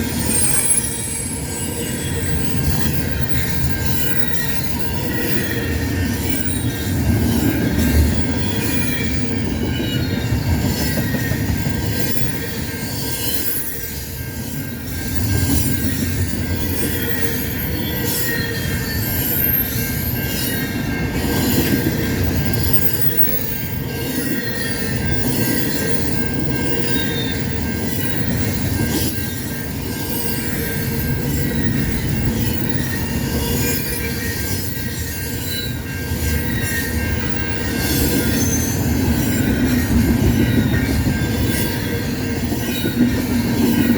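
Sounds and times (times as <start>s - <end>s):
train wheels rumbling on rail: 0.0s - 43.9s
high-pitched wheel squeal: 17.0s - 20.7s, 36.4s - 39.6s.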